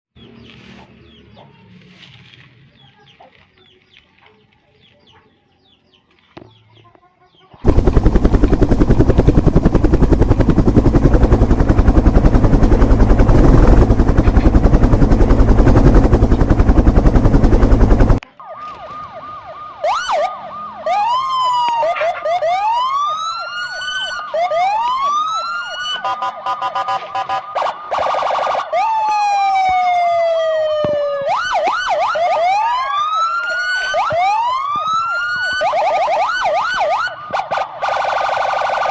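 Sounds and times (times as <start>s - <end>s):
loud rough steady noise: 7.6s - 18.2s
toy police siren wailing: 18.2s - 38.9s.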